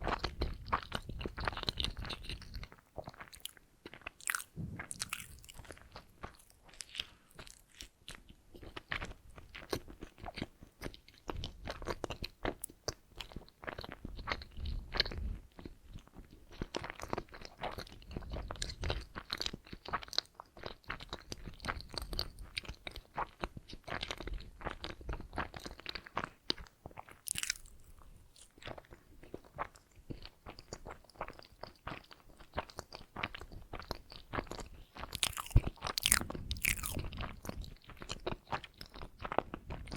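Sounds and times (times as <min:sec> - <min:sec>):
chewing with wet mouth clicks: 0:00.0 - 0:39.9
low thuds: 0:04.5 - 0:06.0.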